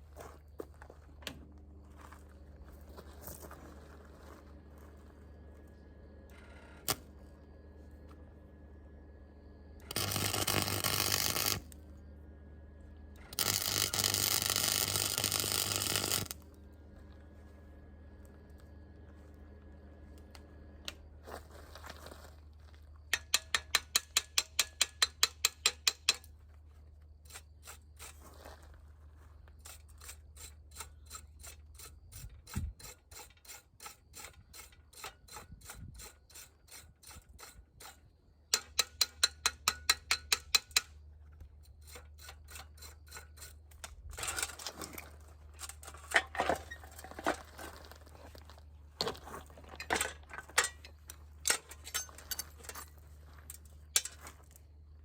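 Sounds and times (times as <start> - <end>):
steady low hum: 0.0 - 23.0.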